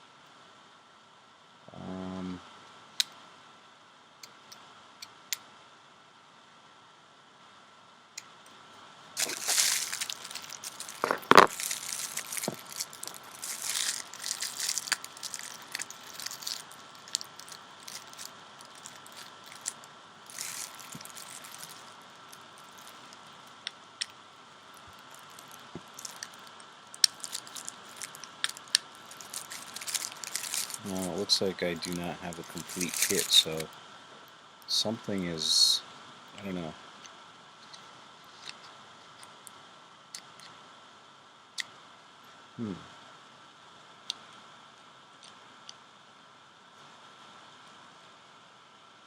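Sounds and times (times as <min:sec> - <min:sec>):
small parts clicking and scraping: 0:09.2 - 0:24.1, 0:24.7 - 0:33.7, 0:37.6 - 0:39.3.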